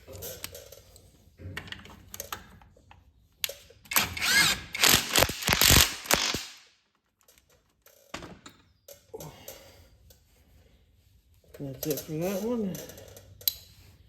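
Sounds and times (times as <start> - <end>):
power tool motor driving bolt: 3.9 - 6.6.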